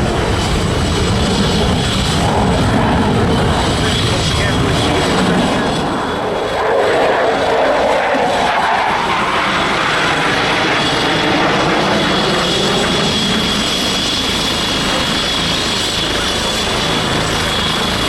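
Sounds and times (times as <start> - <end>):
propeller plane engine flyover: 0.0 - 18.0.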